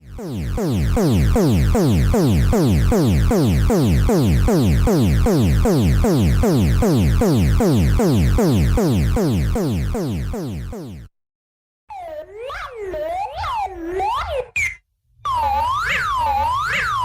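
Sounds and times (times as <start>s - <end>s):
buzzy falling alarm tone: 0.0s - 11.1s, 15.3s - 17.0s.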